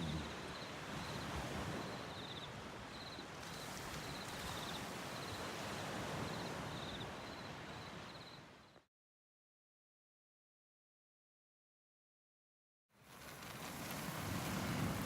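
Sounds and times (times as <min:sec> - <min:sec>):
waves on a beach: 0:00.0 - 0:08.6, 0:13.0 - 0:15.0.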